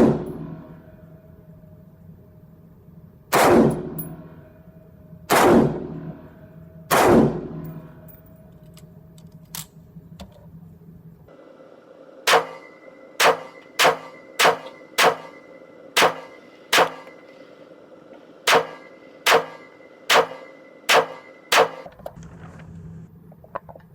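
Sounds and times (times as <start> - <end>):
rifle shots with echo: 3.3 - 4.0, 5.3 - 7.8, 12.3 - 17.6, 18.4 - 21.9.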